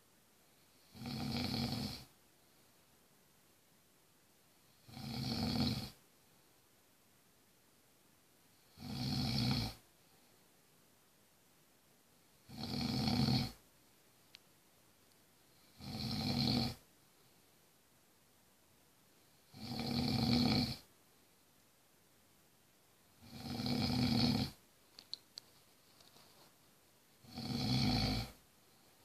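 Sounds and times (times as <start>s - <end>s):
man snoring: 0.7s - 2.1s, 4.7s - 6.0s, 8.6s - 9.8s, 12.5s - 13.6s, 15.6s - 16.8s, 19.5s - 20.9s, 23.2s - 24.6s, 27.2s - 28.4s.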